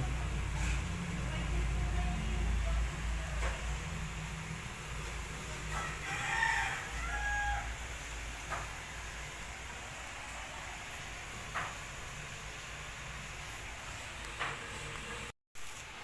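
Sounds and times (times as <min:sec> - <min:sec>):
rooster crowing: 0:05.6 - 0:08.6.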